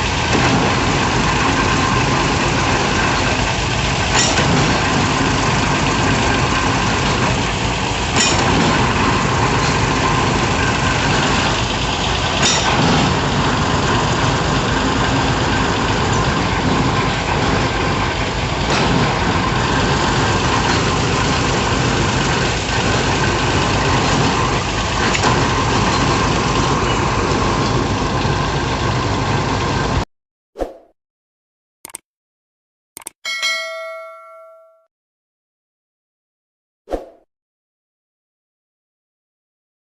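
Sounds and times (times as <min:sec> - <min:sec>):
diesel engine running: 0:00.0 - 0:30.0.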